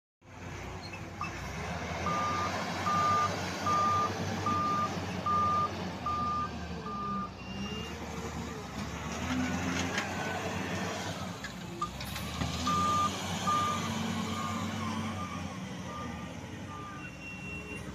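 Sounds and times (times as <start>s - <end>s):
heavy diesel engine rumble: 0.2s - 17.9s
backup alarm beeping: 2.1s - 7.8s.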